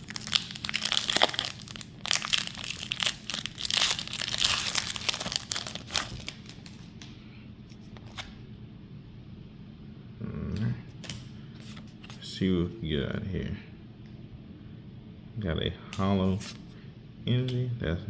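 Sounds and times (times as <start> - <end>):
foil wrapper crinkling and tearing: 0.0 - 7.1.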